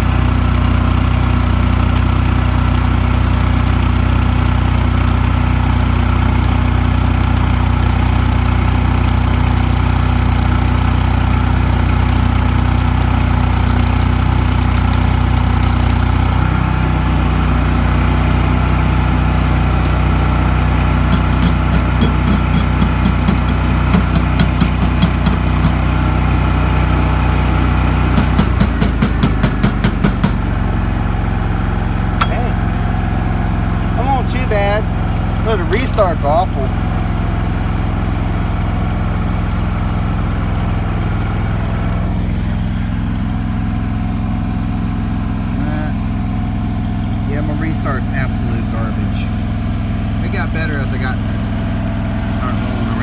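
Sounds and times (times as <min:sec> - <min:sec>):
welder engine running: 0:00.0 - 0:53.0
quick regular taps: 0:21.1 - 0:26.0, 0:28.2 - 0:30.6.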